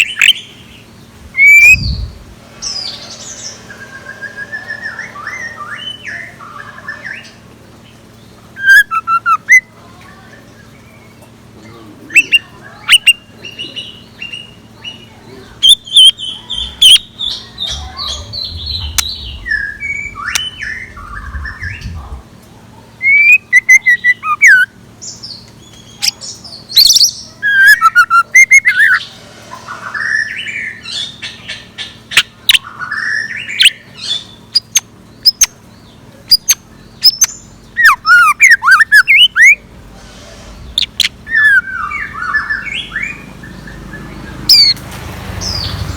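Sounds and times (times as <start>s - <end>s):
steady low hum: 0.0s - 44.5s
bird whistled chirps: 1.4s - 7.4s, 8.6s - 9.7s, 12.2s - 13.2s, 14.3s - 22.2s, 23.0s - 29.1s, 36.3s - 39.7s, 40.6s - 44.8s.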